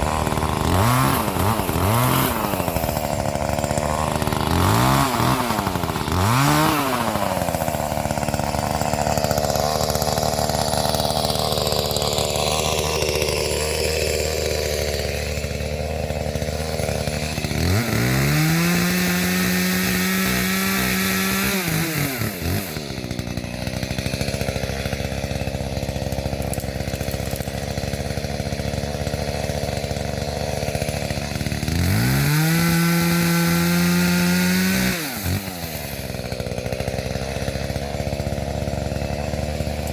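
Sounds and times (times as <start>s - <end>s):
chainsaw idling and revving: 0.0s - 39.9s.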